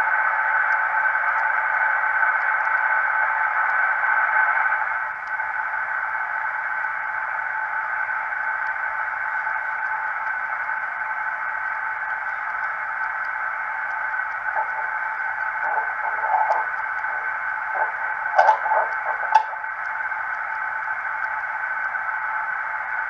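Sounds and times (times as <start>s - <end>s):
radio band noise hiss: 0.0s - 23.0s
static clicks: 0.2s - 7.6s, 8.3s - 23.0s
garbled radio signal: 11.9s - 21.0s.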